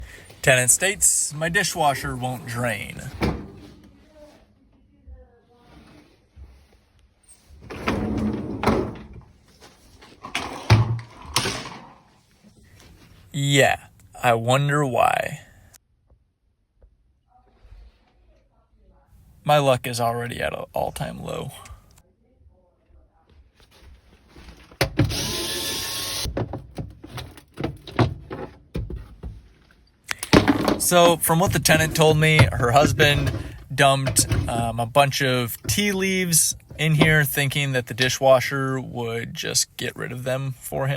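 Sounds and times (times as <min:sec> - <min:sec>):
dishwasher door sliding open: 0:07.6 - 0:09.3
power tool running: 0:25.0 - 0:26.3
knocks and clatters: 0:26.3 - 0:34.7.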